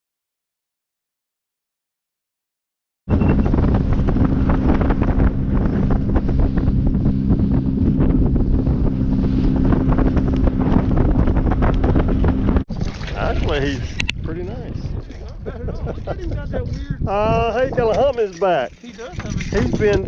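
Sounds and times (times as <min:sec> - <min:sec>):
boat motor droning: 0:03.1 - 0:14.1
wind buffeting microphone: 0:03.1 - 0:20.0.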